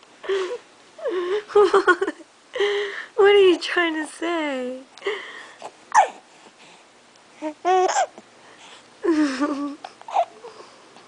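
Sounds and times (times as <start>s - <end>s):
baby hiccuping: 5.9s - 6.2s, 7.7s - 8.2s
baby cooing: 7.4s - 8.2s, 10.1s - 10.6s.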